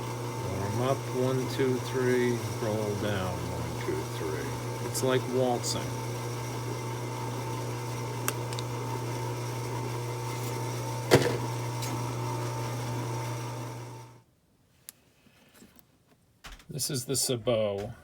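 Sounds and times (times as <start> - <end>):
drill press humming: 0.0 - 14.2.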